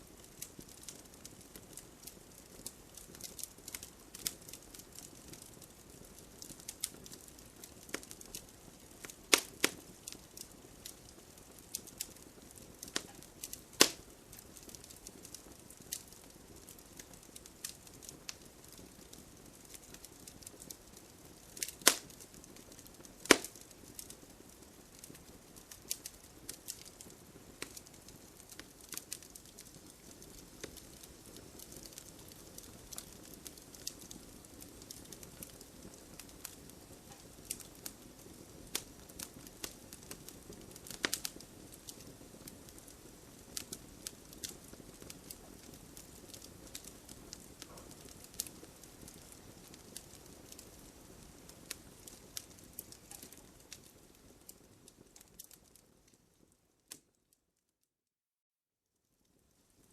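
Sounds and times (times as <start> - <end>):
campfire crackling: 0.0 - 57.3
faint fire hiss: 0.0 - 57.7, 59.0 - 59.9
sharp wood cracks: 13.8 - 14.0, 21.6 - 22.0, 23.2 - 23.6.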